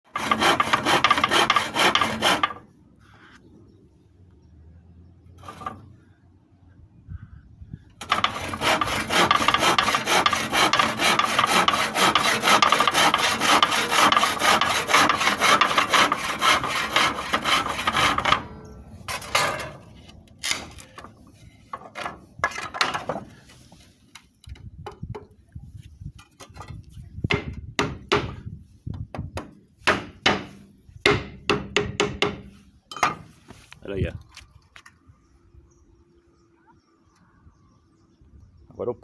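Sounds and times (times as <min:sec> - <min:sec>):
handsaw cutting wood: 0:00.1 - 0:02.6, 0:08.0 - 0:18.5
scrapes and knocks: 0:05.4 - 0:06.0, 0:08.0 - 0:24.3.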